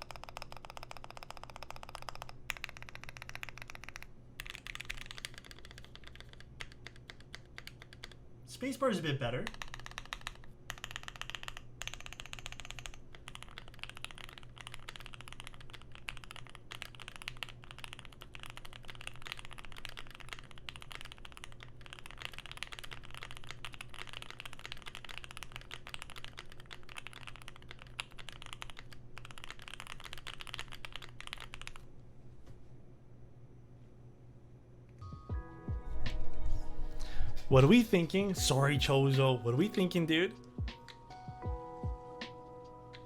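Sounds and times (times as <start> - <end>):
fast mechanical keyboard typing: 0.0 - 31.9.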